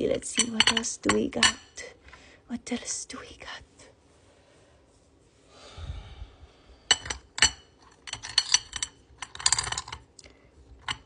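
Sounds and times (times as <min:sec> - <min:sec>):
soft rustle: 0:02.0 - 0:06.2.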